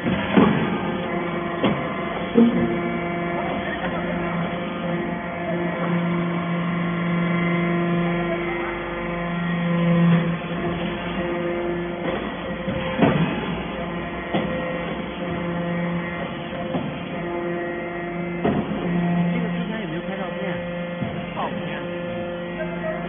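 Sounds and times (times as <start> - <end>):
sharp metallic knocks: 0.0 - 4.0
baler machine hum: 0.0 - 23.0.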